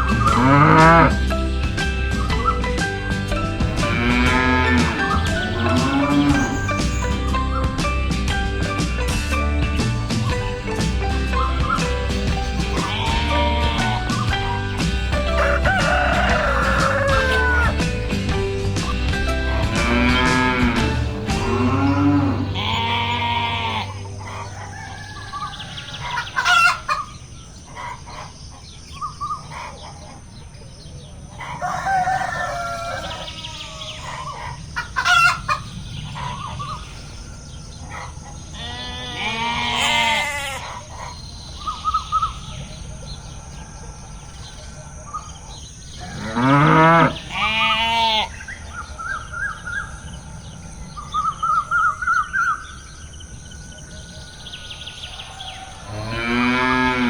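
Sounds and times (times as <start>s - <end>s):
hens clucking: 0.0s - 52.6s
rooster crowing: 12.8s - 17.9s, 22.2s - 27.1s, 31.4s - 35.6s, 46.0s - 48.3s, 54.2s - 57.0s.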